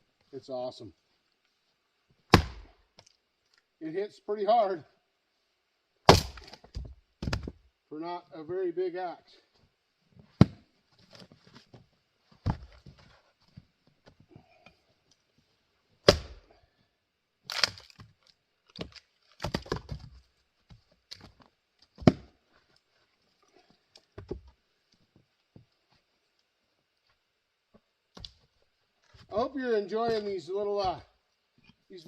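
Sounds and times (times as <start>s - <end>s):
axe chopping wood: 2.3s - 2.8s, 6.1s - 7.6s, 10.4s - 10.6s, 16.0s - 16.5s, 18.8s - 20.0s, 22.0s - 22.4s
wood knocking and cracking: 6.1s - 7.6s, 17.5s - 22.3s.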